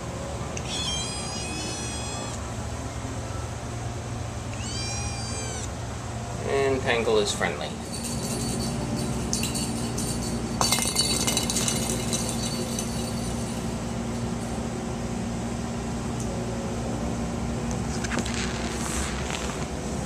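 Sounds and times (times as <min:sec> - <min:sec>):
air conditioner hum: 0:00.0 - 0:20.0
sharp clinks and rattles: 0:07.6 - 0:14.6.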